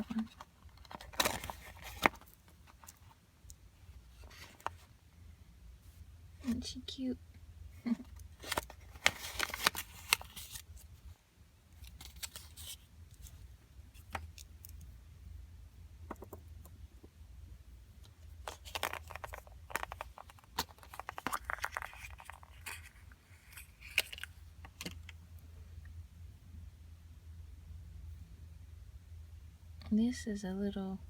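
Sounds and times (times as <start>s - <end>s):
packaging crinkling: 0.1s - 3.2s, 8.3s - 10.9s, 11.8s - 13.4s, 18.4s - 25.1s
steady low hum: 19.2s - 31.0s.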